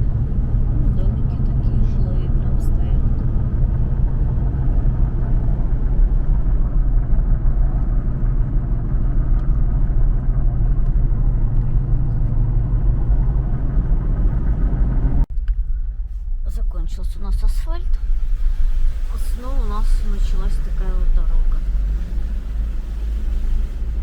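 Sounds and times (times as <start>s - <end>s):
car engine and tyres rumbling: 0.0s - 24.0s.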